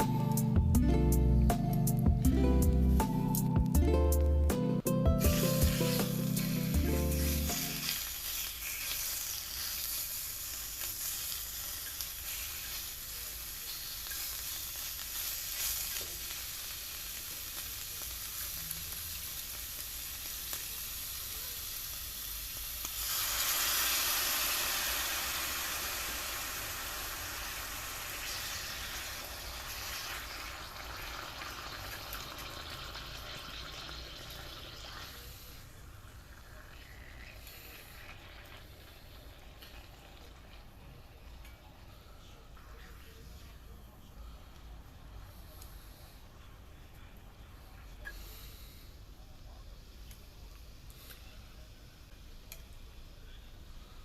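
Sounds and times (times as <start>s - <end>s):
food sizzling in a skillet: 5.2s - 41.3s.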